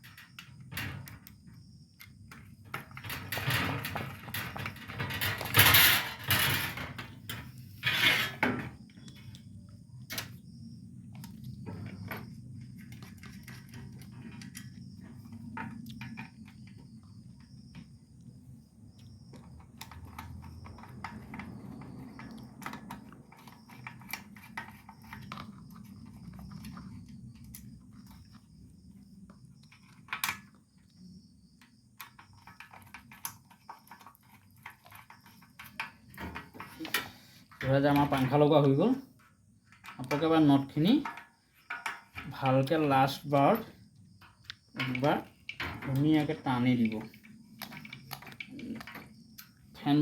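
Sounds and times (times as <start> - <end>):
small metallic clicks and taps: 39.2 - 49.6.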